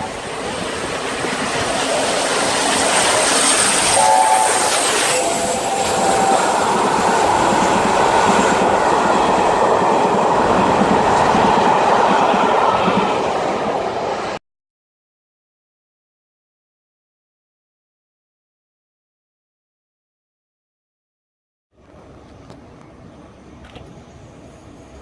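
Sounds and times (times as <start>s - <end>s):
train rushing and rumbling by: 0.0s - 14.4s
steam locomotive chime whistle: 1.6s - 8.8s.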